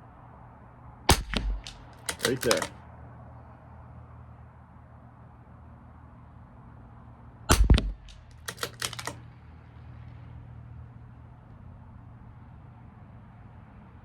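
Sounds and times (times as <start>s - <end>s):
rifle shot: 1.1s - 2.7s, 7.5s - 9.2s
rifle bolt metallic clicks: 1.1s - 2.8s, 7.5s - 9.2s.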